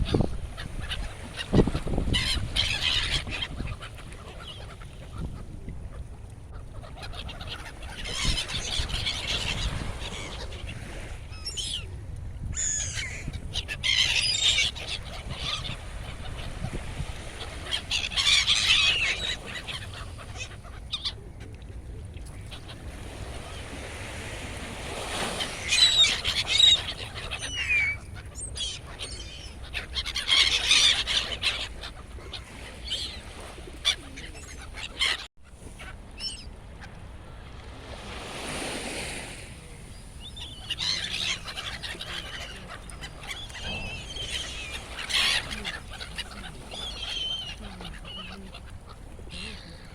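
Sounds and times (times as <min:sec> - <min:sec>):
low rumble of the sea: 0:00.0 - 0:49.9
gulls crying: 0:39.9 - 0:49.9.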